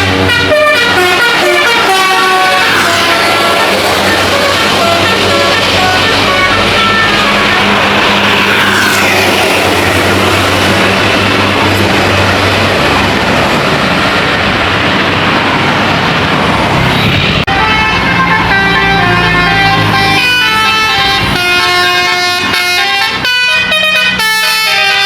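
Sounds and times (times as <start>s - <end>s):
horn tune of stepped notes: 0.0s - 8.4s, 17.5s - 25.0s
bus engine and road noise: 0.0s - 25.0s.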